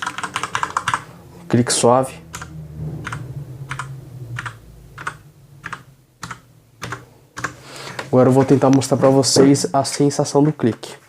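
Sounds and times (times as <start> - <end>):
mechanical keyboard keystrokes: 0.0 - 1.0, 4.4 - 8.8.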